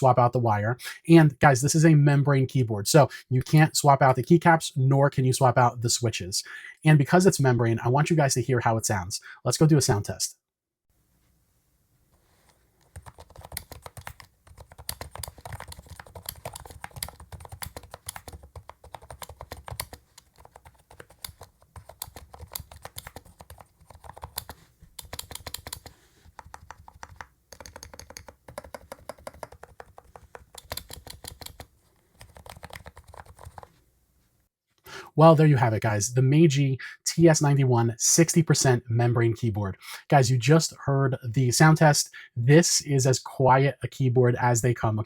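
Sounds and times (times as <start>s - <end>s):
typing on a membrane keyboard: 12.8s - 33.7s.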